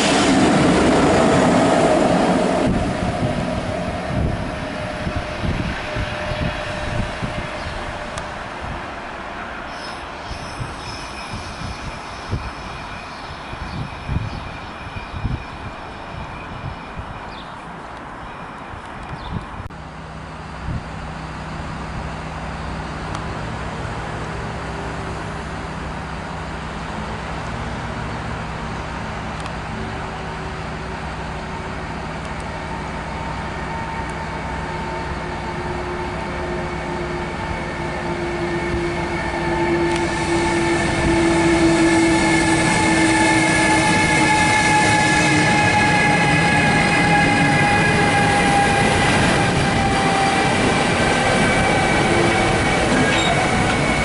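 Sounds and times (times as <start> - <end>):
electric train rumbling: 0.0 - 54.0.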